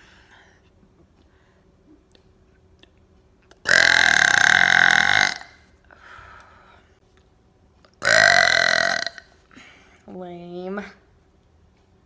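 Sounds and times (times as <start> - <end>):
woman burping: 3.7 - 5.6, 8.0 - 9.3.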